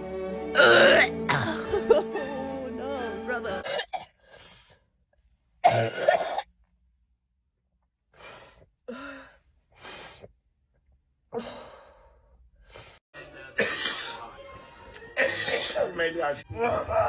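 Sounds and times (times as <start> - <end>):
person coughing and sneezing: 0.5 - 2.1, 3.6 - 4.1, 5.6 - 6.5, 13.6 - 14.4, 15.1 - 16.0.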